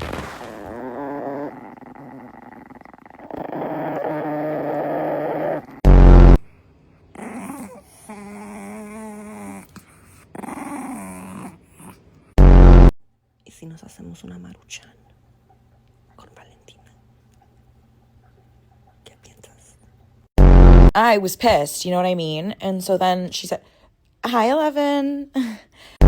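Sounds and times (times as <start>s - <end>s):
loud blast: 0.0s - 0.7s
dog whining: 0.3s - 5.8s, 7.1s - 12.0s
dog growling: 0.4s - 5.9s, 7.1s - 12.4s.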